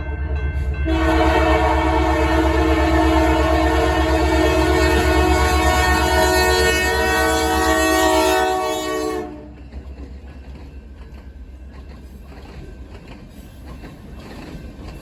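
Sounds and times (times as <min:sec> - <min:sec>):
train rolling rumble: 0:00.0 - 0:15.0
locomotive horn chord: 0:00.6 - 0:09.6.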